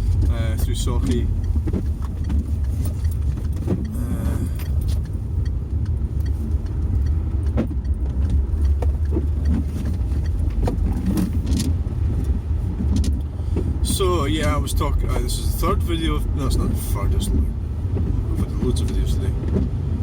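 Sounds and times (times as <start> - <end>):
light clicks and knocks: 0.0 - 19.9
car engine and tyres rumbling: 0.0 - 20.0.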